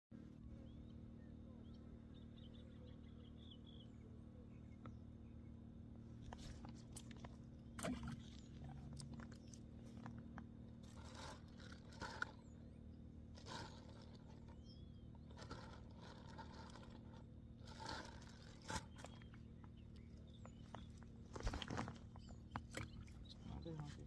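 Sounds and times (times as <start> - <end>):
low steady hum: 0.1 - 24.0
scraping and crunching: 6.2 - 12.6, 13.3 - 23.3.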